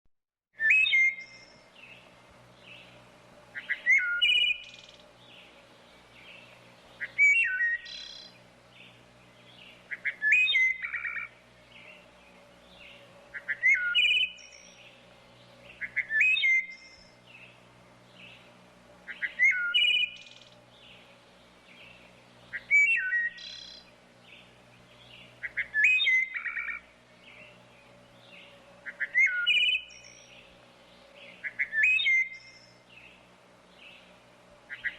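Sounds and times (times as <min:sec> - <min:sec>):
wood thrush singing: 0:00.6 - 0:34.9.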